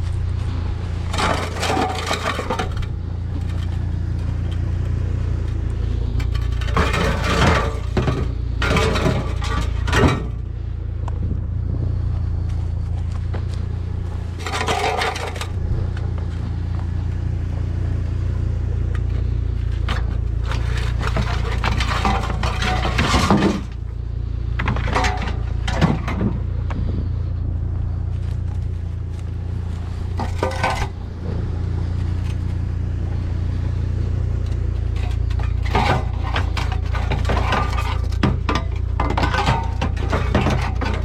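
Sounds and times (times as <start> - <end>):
scrap metal scraping and clattering: 0.0 - 10.9, 12.4 - 17.6, 18.6 - 41.0
steady low rumble: 0.0 - 41.0.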